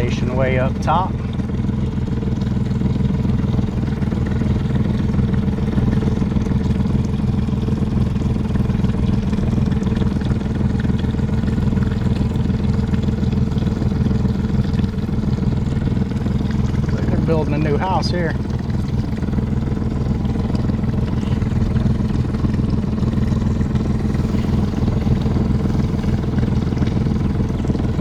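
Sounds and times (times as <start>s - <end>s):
boat engine droning: 0.0s - 28.0s.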